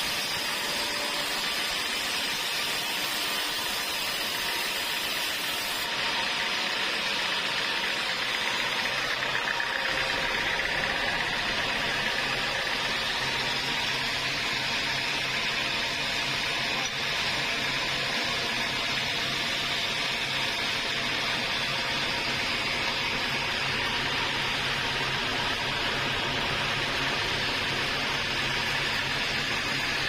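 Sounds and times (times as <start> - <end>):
sawmill machinery humming: 0.0 - 30.0.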